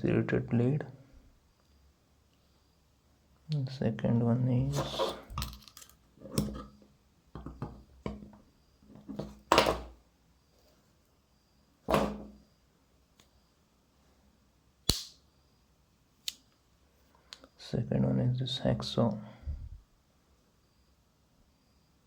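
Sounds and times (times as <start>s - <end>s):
sharp snap: 14.8s - 15.2s.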